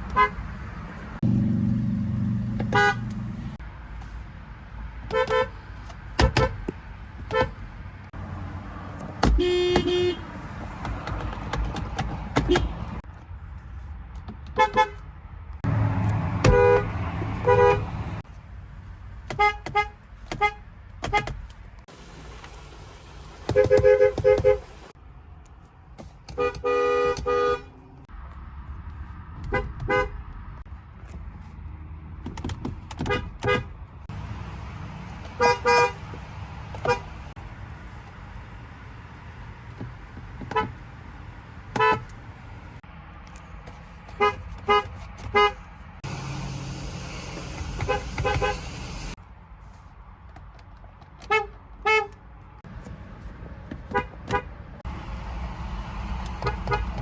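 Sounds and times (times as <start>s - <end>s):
car horns tooting: 0.0s - 0.4s, 2.6s - 3.2s, 5.1s - 5.6s, 9.2s - 10.4s, 12.4s - 13.0s, 14.5s - 15.0s, 16.4s - 18.2s, 19.3s - 21.4s, 23.5s - 24.9s, 26.3s - 27.8s, 29.5s - 30.2s, 33.0s - 33.7s, 35.3s - 37.4s, 41.7s - 42.1s, 44.1s - 45.6s, 47.5s - 49.2s, 51.2s - 52.2s, 53.9s - 54.6s, 56.3s - 57.0s.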